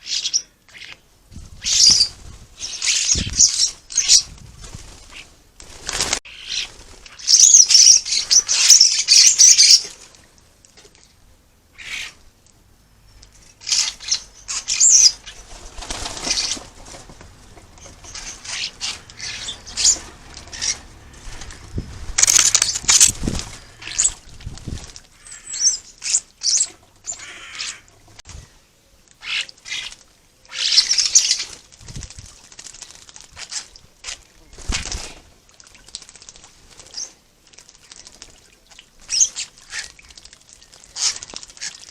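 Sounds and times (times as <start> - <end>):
birds wing-flapping and splashing: 0.8 - 12.4, 13.2 - 28.4, 29.1 - 41.9
bird chirps and squawks: 11.8 - 12.2, 18.0 - 21.6, 23.6 - 24.2, 25.2 - 27.9.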